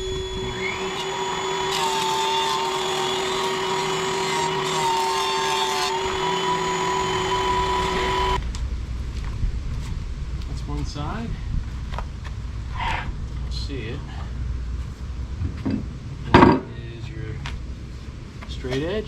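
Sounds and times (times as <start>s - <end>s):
power tool cutting wood: 0.0s - 8.4s.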